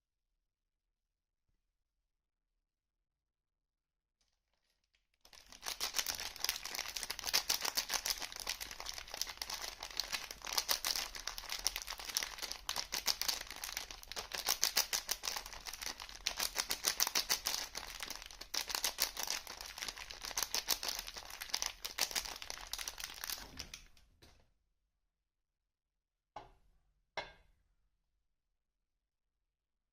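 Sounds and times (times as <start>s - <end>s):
soap packaging crackling: 4.5s - 24.0s.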